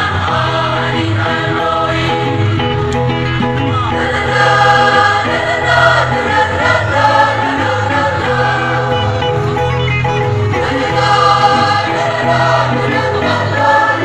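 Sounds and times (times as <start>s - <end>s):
school choir singing in harmony: 0.0s - 2.8s, 3.8s - 9.8s, 10.5s - 14.0s.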